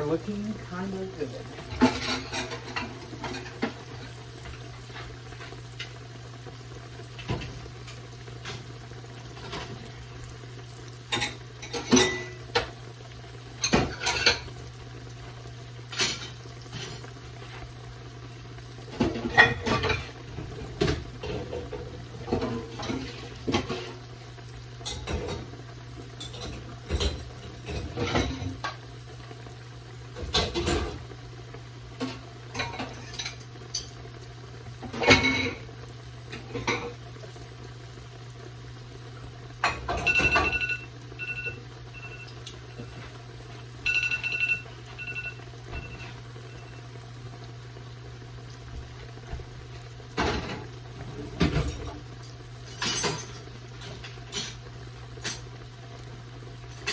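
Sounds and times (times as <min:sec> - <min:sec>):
utensils clinking on pan and dishes: 0:00.1 - 0:03.8, 0:11.1 - 0:12.7, 0:13.6 - 0:14.5, 0:19.0 - 0:20.1, 0:26.2 - 0:28.8, 0:32.0 - 0:34.0, 0:34.8 - 0:35.6, 0:39.6 - 0:43.1, 0:51.3 - 0:55.5.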